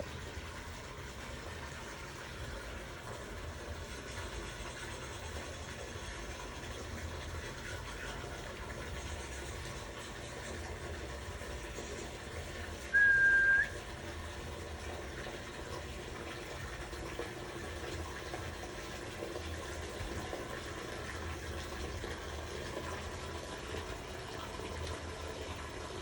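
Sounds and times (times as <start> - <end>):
whistled note: 12.9 - 13.8.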